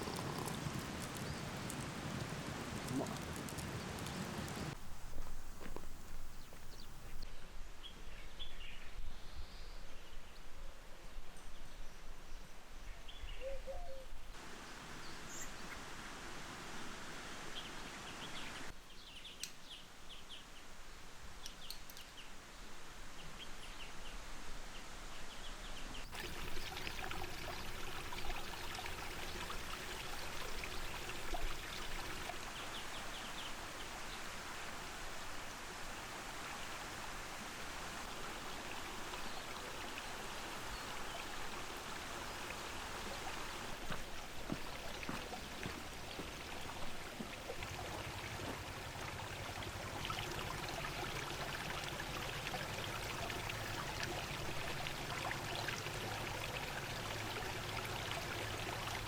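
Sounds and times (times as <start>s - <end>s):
stream water flowing: 0.0s - 7.2s, 14.4s - 18.8s, 26.0s - 59.0s.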